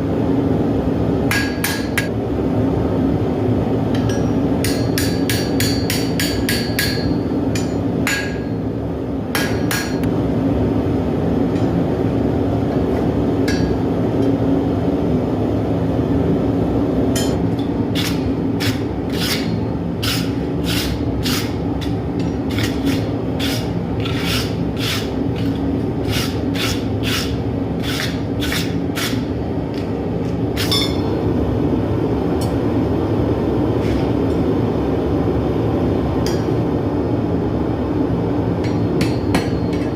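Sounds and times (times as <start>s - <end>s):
hammer striking steel on anvil: 1.3s - 2.1s, 4.0s - 8.6s, 9.3s - 10.1s, 11.5s - 11.8s, 13.4s - 13.8s, 17.1s - 25.1s, 30.6s - 31.1s, 38.6s - 39.9s.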